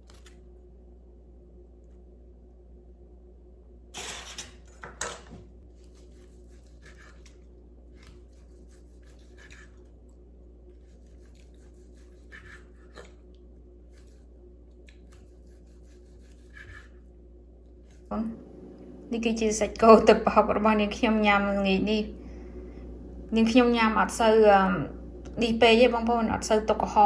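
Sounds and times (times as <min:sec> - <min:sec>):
steady low hum: 0:00.0 - 0:27.0
faint scratches: 0:08.0 - 0:09.8, 0:10.8 - 0:13.2, 0:15.1 - 0:17.1.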